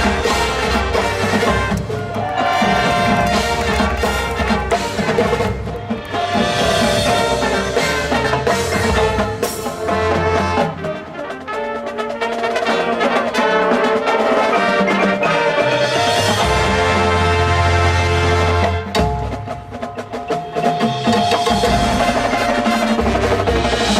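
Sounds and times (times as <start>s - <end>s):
drums and percussion: 0.0s - 23.9s
marching band brass chords: 0.0s - 23.9s.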